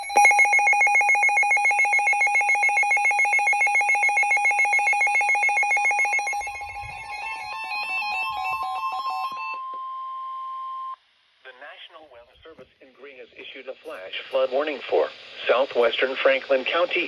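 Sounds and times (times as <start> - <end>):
electronic warble alert: 0.0 - 9.6
falling stepped beeps: 1.8 - 9.4.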